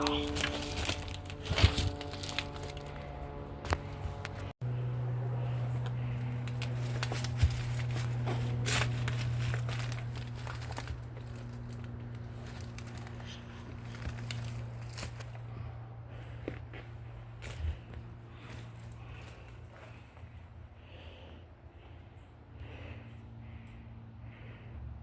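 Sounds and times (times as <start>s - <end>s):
twigs snapping: 0.0s - 4.4s, 5.8s - 15.5s
footsteps crunching through brush: 0.0s - 4.5s, 5.4s - 20.3s
steady low hum: 0.0s - 25.0s.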